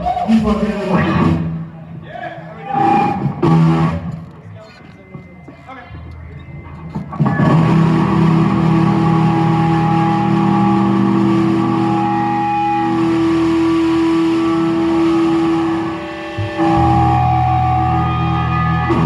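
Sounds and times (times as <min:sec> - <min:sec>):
distorted electric guitar chord: 0:07.0 - 0:19.0.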